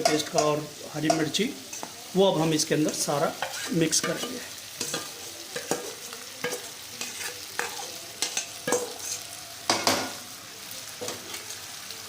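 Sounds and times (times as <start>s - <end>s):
spoon scraping a pan: 0.0s - 2.1s, 2.8s - 10.2s, 11.0s - 11.7s
food sizzling in a pan: 0.0s - 12.0s
spoon knocking against pan: 9.7s - 10.2s.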